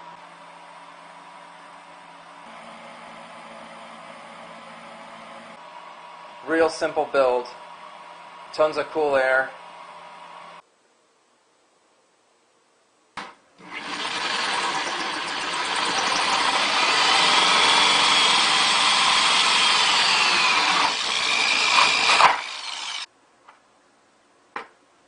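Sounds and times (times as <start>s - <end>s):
power drill boring through plastic: 13.6s - 23.1s.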